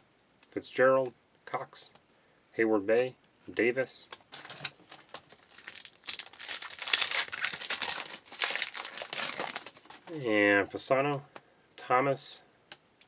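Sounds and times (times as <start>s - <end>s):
wrapper crinkling: 4.3s - 10.2s.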